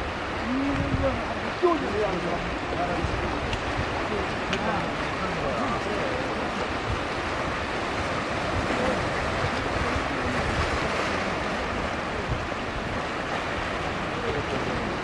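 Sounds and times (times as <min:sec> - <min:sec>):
sea surf washing on shore: 0:00.0 - 0:15.0
wind buffeting microphone: 0:00.0 - 0:15.0.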